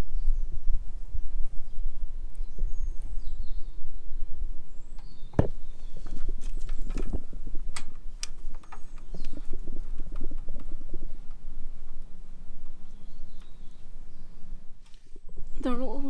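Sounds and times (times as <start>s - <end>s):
faint bird chirps: 0.0s - 7.1s, 8.5s - 9.8s, 12.7s - 16.0s.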